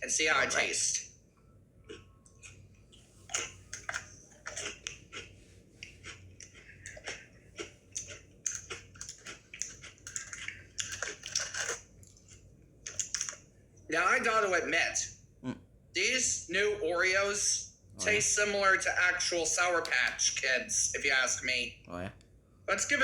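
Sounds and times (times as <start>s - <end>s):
chewing crunchy cookies: 1.8s - 13.5s.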